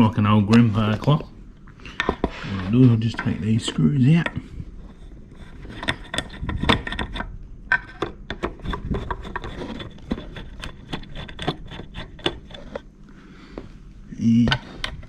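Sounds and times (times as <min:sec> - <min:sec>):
screwdriver clicks and scrapes: 0:04.9 - 0:12.8.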